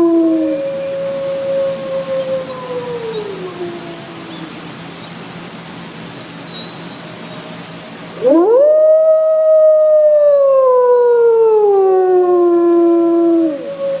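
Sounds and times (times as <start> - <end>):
wolf howling: 0.0 - 4.6, 8.2 - 14.0
second steadier wolf howl: 8.2 - 14.0.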